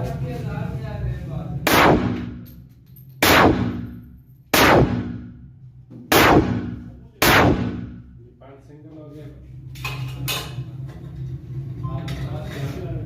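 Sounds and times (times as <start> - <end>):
pistol shots echoing: 1.7 - 2.5, 3.2 - 5.4, 6.1 - 8.1.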